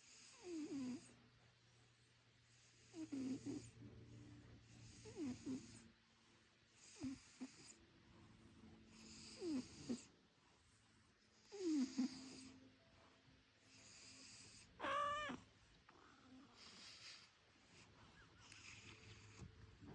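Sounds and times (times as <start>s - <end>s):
cat snoring: 0.0s - 1.2s, 2.5s - 3.8s, 4.6s - 5.9s, 6.8s - 7.8s, 8.9s - 10.1s, 11.4s - 12.6s, 13.6s - 15.4s, 16.6s - 19.5s.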